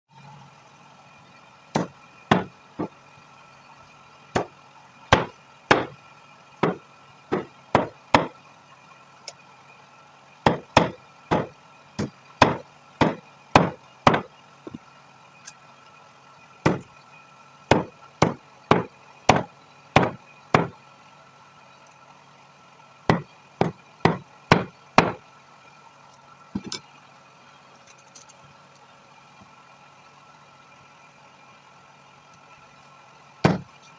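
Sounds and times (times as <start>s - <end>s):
steady background hum: 0.2s - 33.9s
heavy blade chopping chicken: 1.8s - 2.5s, 5.1s - 6.0s, 6.6s - 8.3s, 10.5s - 14.3s, 16.7s - 16.9s, 17.7s - 20.7s, 23.1s - 25.2s, 33.5s - 33.7s.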